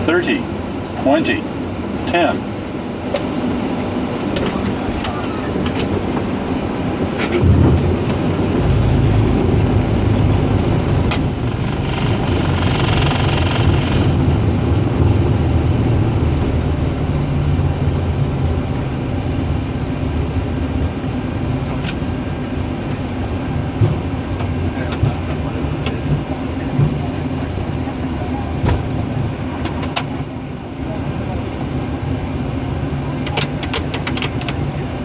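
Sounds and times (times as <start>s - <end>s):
jet engine noise: 0.0s - 35.0s
landing gear rumbling on runway: 3.0s - 27.8s.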